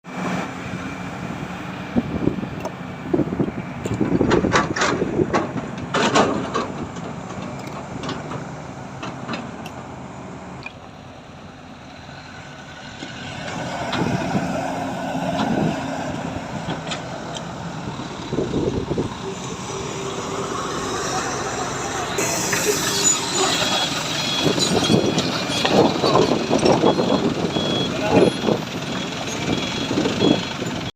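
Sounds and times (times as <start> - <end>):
engine running: 0.1 - 30.9
loud knocks and clatters: 4.0 - 9.5.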